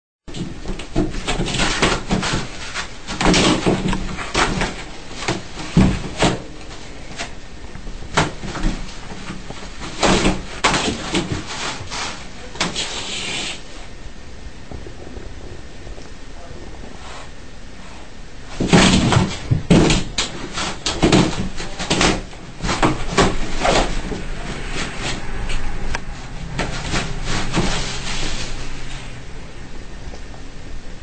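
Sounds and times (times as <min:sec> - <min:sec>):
knocks and bangs: 0:18.6 - 0:29.4.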